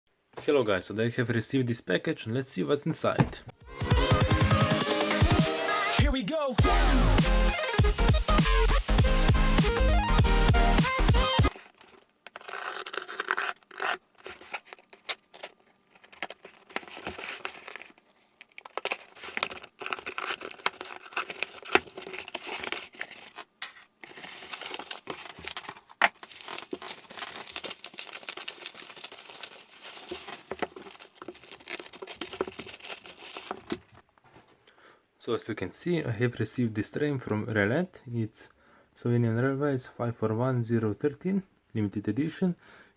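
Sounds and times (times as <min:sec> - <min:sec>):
tape tearing: 0:11.4 - 0:34.0
packing material crinkling: 0:11.4 - 0:34.1.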